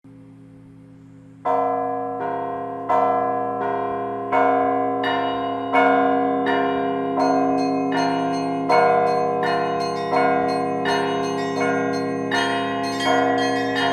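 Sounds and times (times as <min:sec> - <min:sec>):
church bell strokes ringing: 0:01.4 - 0:13.9
small high-pitched bells: 0:07.2 - 0:13.9.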